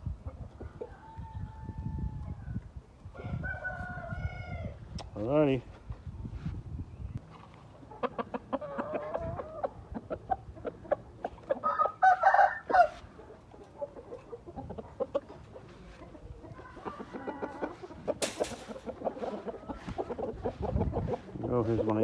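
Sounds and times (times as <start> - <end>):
chickens clucking: 0.0 - 1.5, 7.3 - 22.0.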